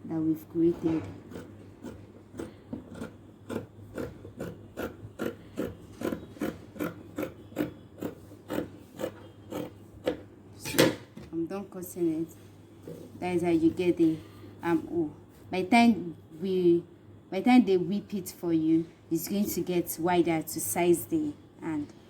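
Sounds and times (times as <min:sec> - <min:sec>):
scissors snipping fabric: 0:01.0 - 0:10.2.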